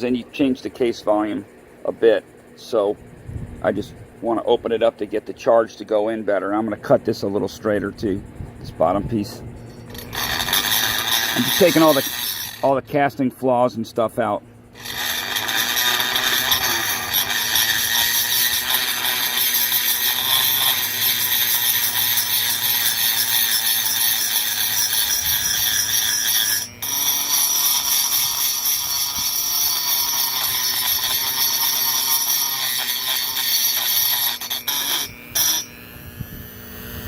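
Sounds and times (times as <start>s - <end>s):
rotary tool grinding metal: 9.6s - 13.0s, 14.7s - 37.0s.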